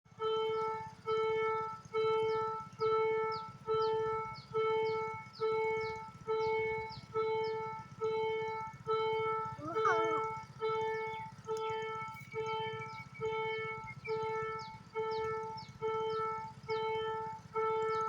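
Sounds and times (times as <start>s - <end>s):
low steady rumble: 0.1s - 18.0s
level-crossing bell ringing: 4.8s - 14.8s.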